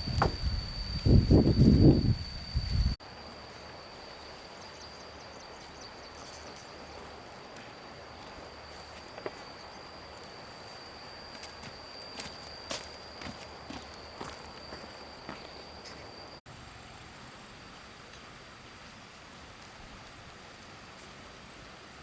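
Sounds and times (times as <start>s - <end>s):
high-pitched insect drone: 0.0s - 16.4s.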